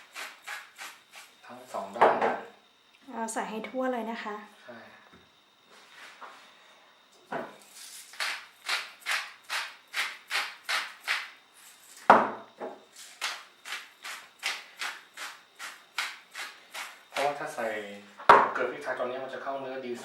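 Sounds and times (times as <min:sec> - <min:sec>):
spice mill grinding: 0:00.0 - 0:01.4, 0:07.6 - 0:12.1, 0:13.0 - 0:17.4.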